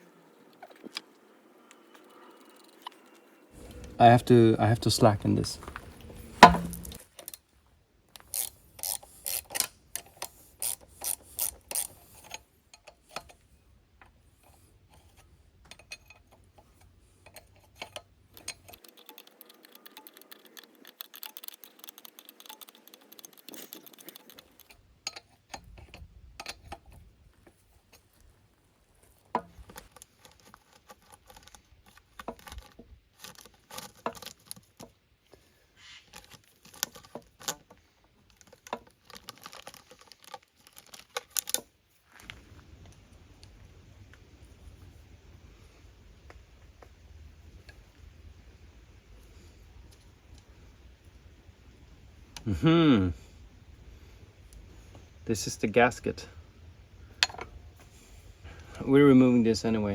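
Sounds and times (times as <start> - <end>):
metal rubbing: 2.0 - 7.0
hand tools clicking on metal: 8.2 - 13.4, 15.0 - 27.0.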